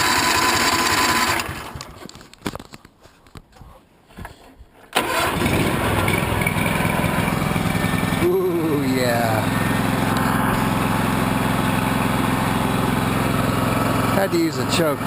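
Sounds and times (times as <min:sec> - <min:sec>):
engine cranking: 0:00.0 - 0:02.2, 0:04.9 - 0:08.3
gasoline engine running: 0:05.0 - 0:15.0.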